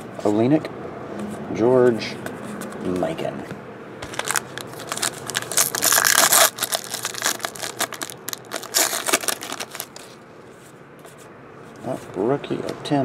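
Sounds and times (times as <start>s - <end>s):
wrapper crinkling and tearing: 4.0s - 10.2s.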